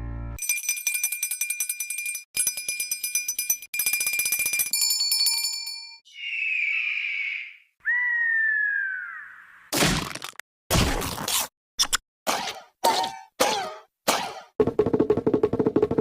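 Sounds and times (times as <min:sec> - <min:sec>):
cartoon bell trilling: 0:00.4 - 0:06.3.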